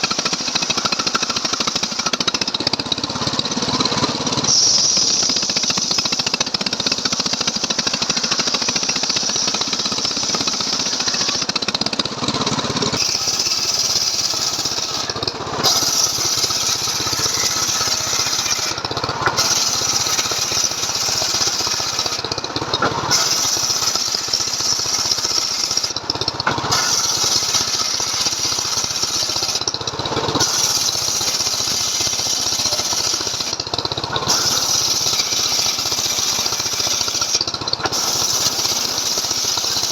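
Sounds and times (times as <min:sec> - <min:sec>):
chainsaw cutting log: 0:00.0 - 0:39.9.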